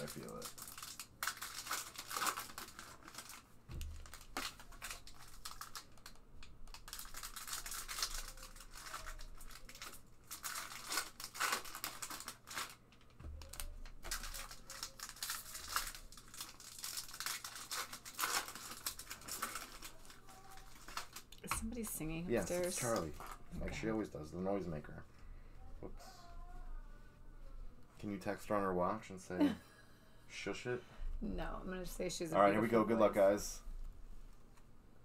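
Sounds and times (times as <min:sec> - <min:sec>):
foil wrappers tearing and crinkling: 0:00.0 - 0:21.5, 0:22.5 - 0:23.5.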